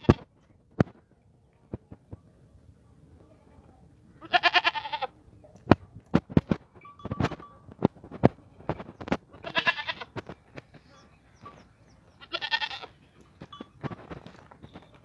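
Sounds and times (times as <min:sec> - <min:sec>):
goat bleating: 0:04.2 - 0:05.2, 0:09.4 - 0:10.2, 0:12.2 - 0:13.0.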